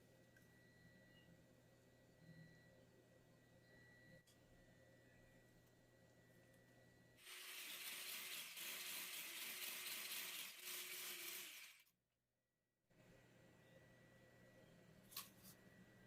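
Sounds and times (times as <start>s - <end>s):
electric hand mixer running: 7.2s - 11.9s.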